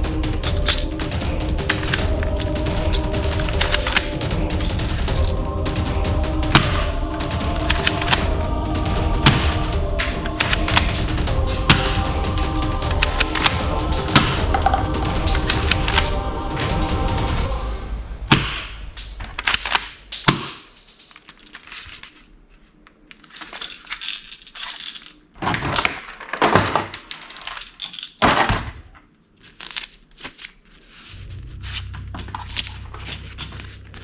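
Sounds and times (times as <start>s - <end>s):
music: 0.0s - 22.4s, 31.1s - 34.0s
crackling rattles: 0.0s - 28.2s
low steady hum: 31.2s - 34.0s.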